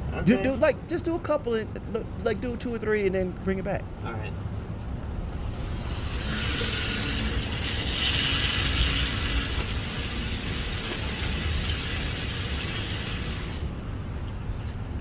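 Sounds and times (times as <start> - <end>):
motorized target carrier whirring: 5.2 - 14.0.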